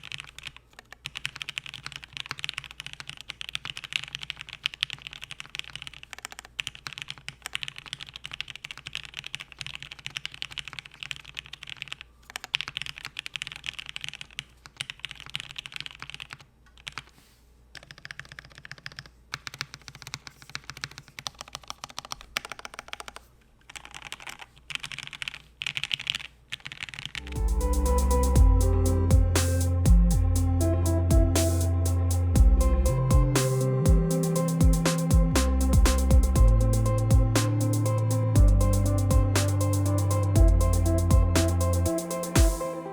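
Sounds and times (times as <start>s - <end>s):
mechanical keyboard typing: 0.0s - 17.1s, 17.7s - 27.3s
music with heavy bass: 27.2s - 42.9s.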